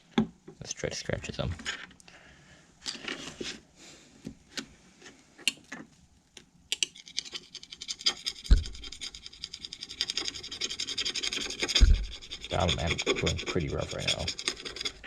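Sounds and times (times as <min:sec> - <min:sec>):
scratching on phone screen: 0:06.9 - 0:15.0.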